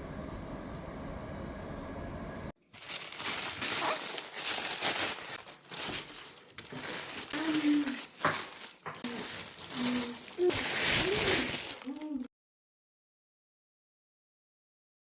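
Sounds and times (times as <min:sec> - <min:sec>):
plastic rustling and crinkling: 0:02.6 - 0:12.3.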